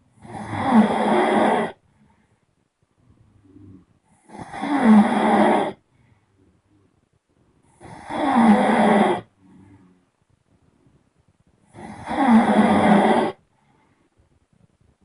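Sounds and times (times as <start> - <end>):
person snoring loudly: 0.2 - 1.8, 3.5 - 5.8, 7.7 - 10.0, 11.7 - 13.4.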